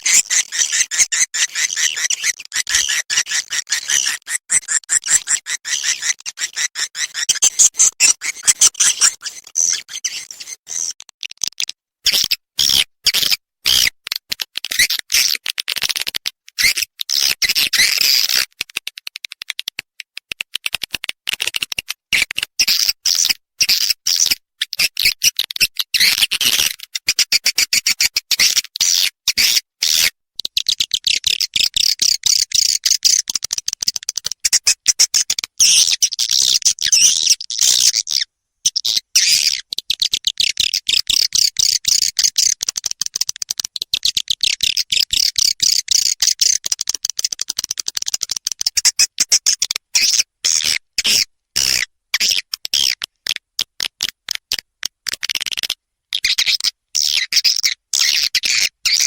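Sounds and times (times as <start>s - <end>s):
recorded swiftlet chirps and twitters: 0.0s - 13.9s, 16.6s - 18.7s, 22.6s - 53.0s, 55.2s - 59.0s.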